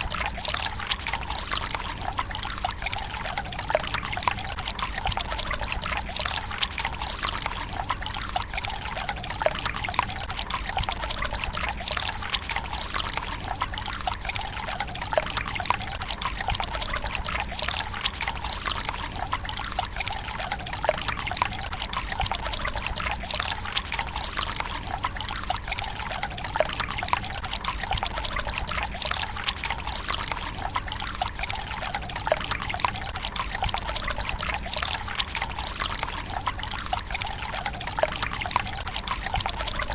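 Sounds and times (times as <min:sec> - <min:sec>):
small splashing plinks: 0:00.0 - 0:39.9
water trickling into stone basin: 0:00.0 - 0:39.9.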